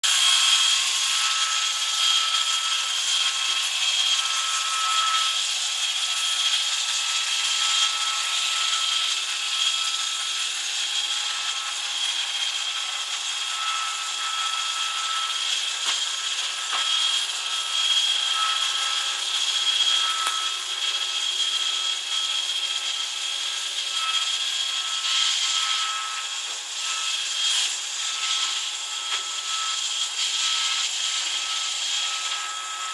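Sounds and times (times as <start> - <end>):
robot vacuum whining: 14.2 - 23.1.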